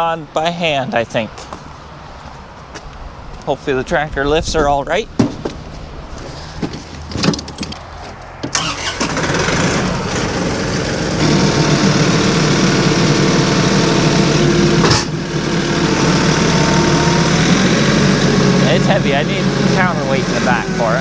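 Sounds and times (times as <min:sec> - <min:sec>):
tractor engine under load: 0:04.2 - 0:21.0.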